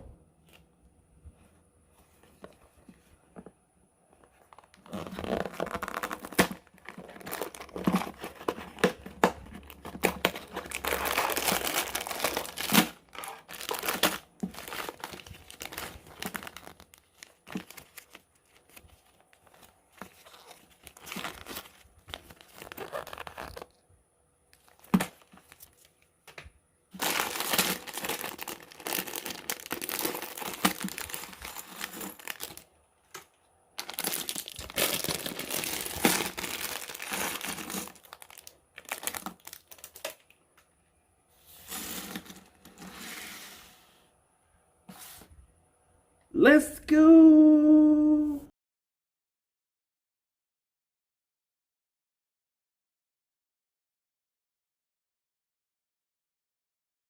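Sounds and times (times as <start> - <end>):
packaging torn and crinkled: 4.5 - 23.7, 27.0 - 33.2, 33.8 - 40.4.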